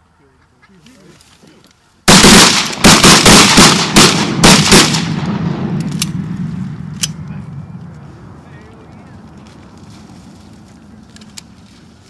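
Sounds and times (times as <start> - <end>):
shotgun blasts: 2.1 - 7.2.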